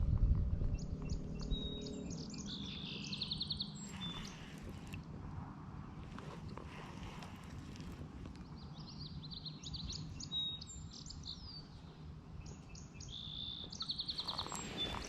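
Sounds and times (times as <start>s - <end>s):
low background noise: 0.0s - 15.0s
songbirds chirping: 0.6s - 5.2s, 5.8s - 15.0s
bird trill: 0.7s - 4.5s, 12.4s - 15.0s.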